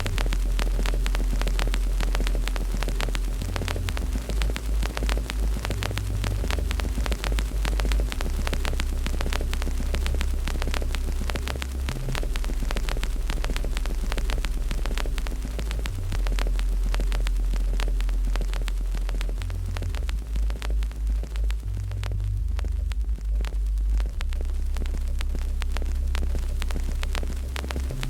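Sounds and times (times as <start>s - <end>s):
low fire rumble: 0.0s - 28.0s
wood fire crackling and popping: 0.0s - 28.0s.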